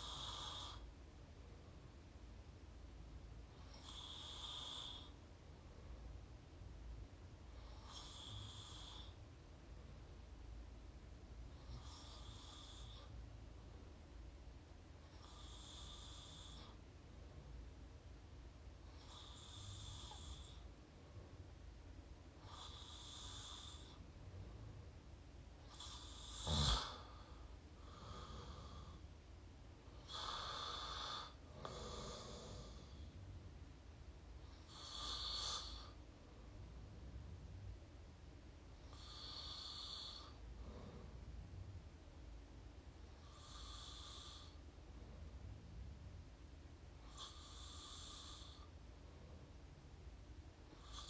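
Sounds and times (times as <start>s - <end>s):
person snoring: 0.0s - 0.8s, 25.7s - 29.0s
steady low rumble: 23.6s - 26.3s, 31.4s - 34.7s, 35.7s - 39.2s, 40.3s - 43.4s, 44.5s - 47.1s
person snoring through open mouth: 25.7s - 27.1s
slow airy breathing: 38.7s - 42.2s.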